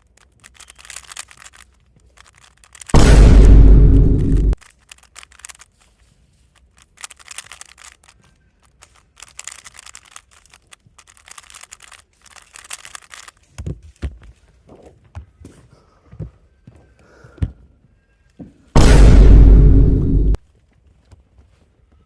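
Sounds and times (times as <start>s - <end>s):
speedcube clicking turns: 0.0s - 3.0s, 4.5s - 14.0s
low thumps: 3.0s - 4.6s, 18.8s - 20.4s.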